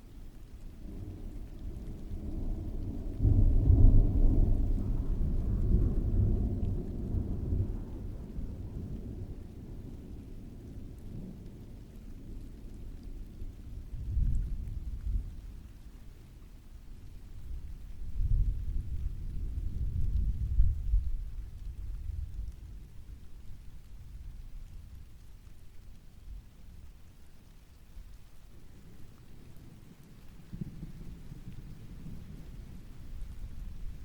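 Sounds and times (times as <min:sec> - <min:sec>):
steady rain: 0:00.0 - 0:34.0
rolling thunder: 0:00.8 - 0:15.7, 0:17.2 - 0:25.2.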